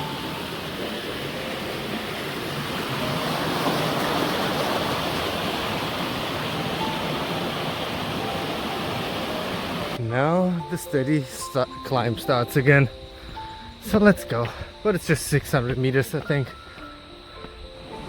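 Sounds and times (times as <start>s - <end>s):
river water rushing over rocks: 0.0s - 10.0s.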